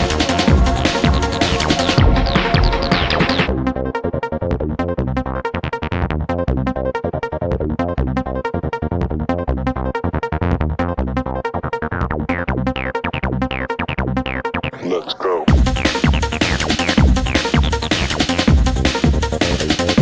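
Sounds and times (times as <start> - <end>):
electronic dance music: 0.0 - 4.0, 14.7 - 20.0
falling synth sweep: 0.0 - 4.4.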